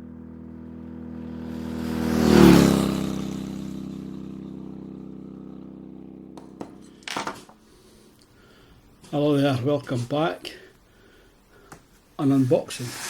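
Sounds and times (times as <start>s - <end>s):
vehicle driving past: 0.0s - 7.1s.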